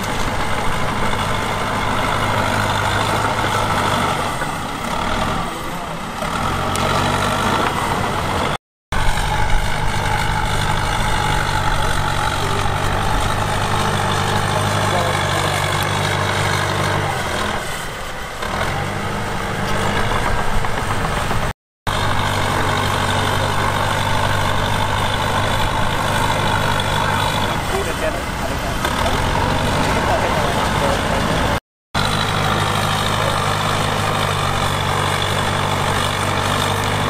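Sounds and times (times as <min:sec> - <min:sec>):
diesel engine running: 0:00.0 - 0:37.0.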